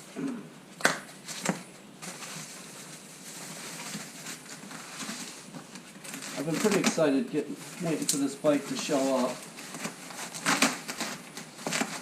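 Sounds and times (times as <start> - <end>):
faint steady hiss: 0.0 - 12.0.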